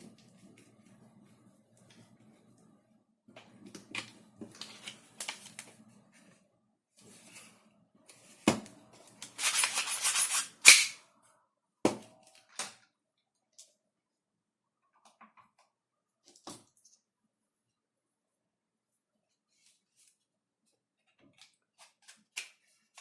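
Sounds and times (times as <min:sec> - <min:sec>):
plastic rasping scrape: 0:09.3 - 0:10.9
plastic snapping: 0:10.6 - 0:11.0.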